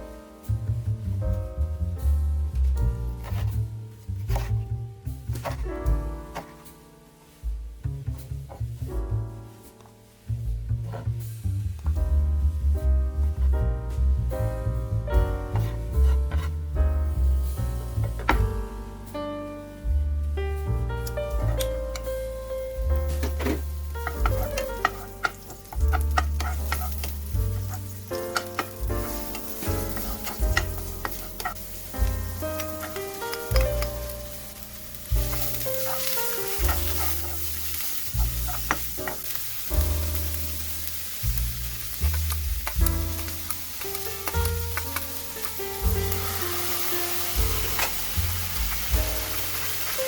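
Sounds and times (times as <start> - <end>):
background music: 0.0 - 50.0
food sizzling in a pan: 21.0 - 50.0
spatula clacking against pan: 23.3 - 34.1, 35.2 - 39.4, 42.0 - 49.5.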